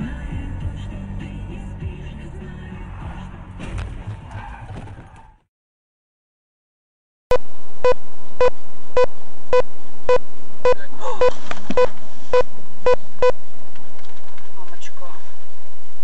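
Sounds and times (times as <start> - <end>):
electronic warning beeps: 7.3 - 13.4.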